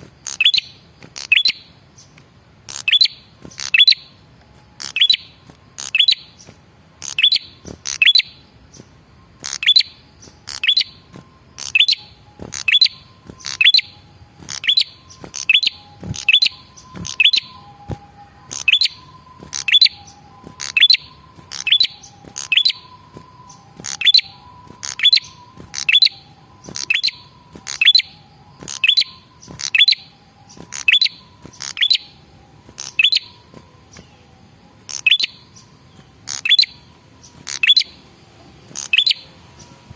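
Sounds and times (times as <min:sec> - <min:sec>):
tailorbird calling: 0:02.7 - 0:04.1, 0:07.0 - 0:08.4, 0:09.4 - 0:34.1, 0:34.9 - 0:38.0, 0:38.7 - 0:39.3.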